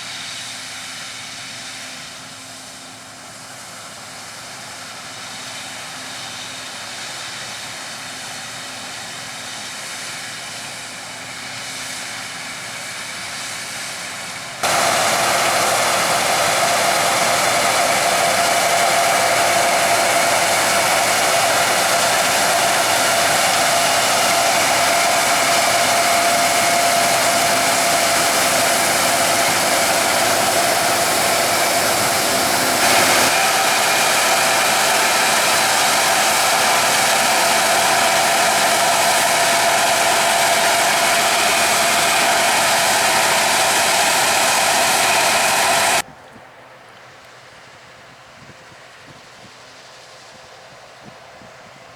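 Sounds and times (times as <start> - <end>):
combine harvester whirring: 12.8 - 46.1
steady whine: 14.6 - 46.0.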